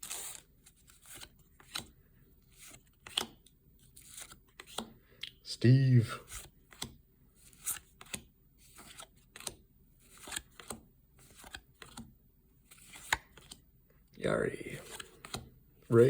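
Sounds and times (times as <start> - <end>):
cards flicking and sliding: 0.0 - 1.9, 2.6 - 3.4, 6.3 - 12.1, 12.7 - 13.6, 14.8 - 15.5.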